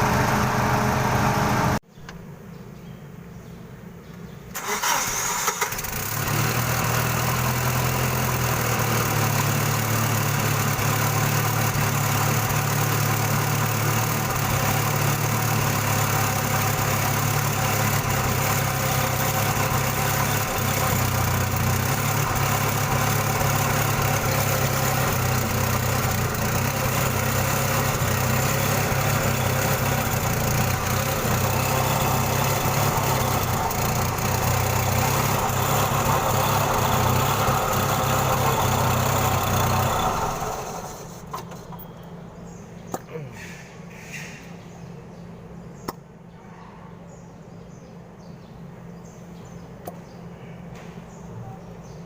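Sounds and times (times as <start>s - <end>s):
forklift engine starting and running: 0.0s - 1.9s, 4.5s - 43.2s.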